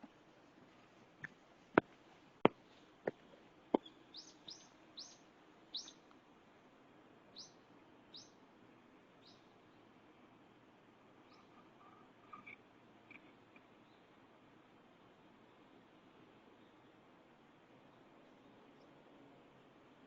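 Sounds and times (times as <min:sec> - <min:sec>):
small bird chirping: 0:03.8 - 0:06.1, 0:07.3 - 0:08.4, 0:09.2 - 0:09.6, 0:11.2 - 0:14.1.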